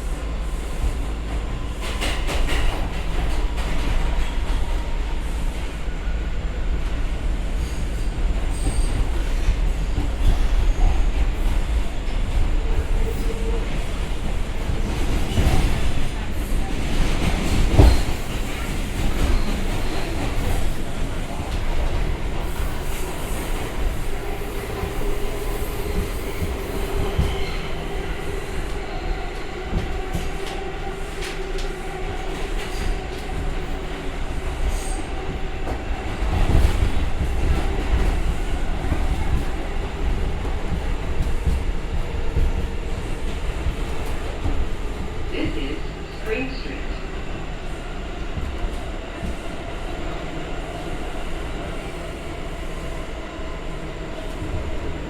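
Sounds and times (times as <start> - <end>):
train wheels rumbling on rails: 0.0 - 55.0
train knocks: 14.5 - 23.0, 23.6 - 47.4.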